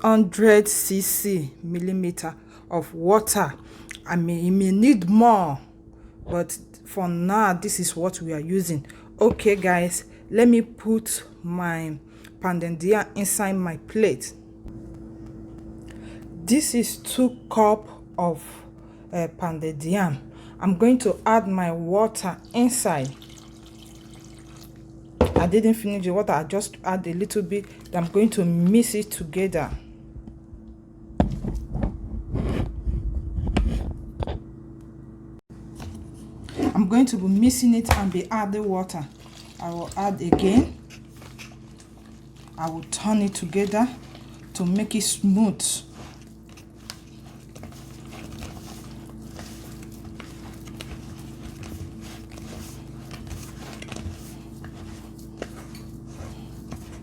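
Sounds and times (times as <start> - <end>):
steady low hum: 0.0 - 57.0
dough squishing: 35.7 - 57.0
whisk scraping paste in a plate: 35.8 - 57.0.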